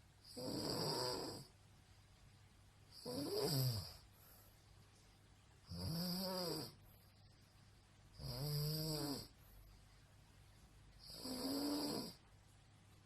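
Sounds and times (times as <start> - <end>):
woman snoring: 0.2 - 1.5, 3.0 - 4.0, 5.7 - 6.8, 8.2 - 9.4, 11.0 - 12.2.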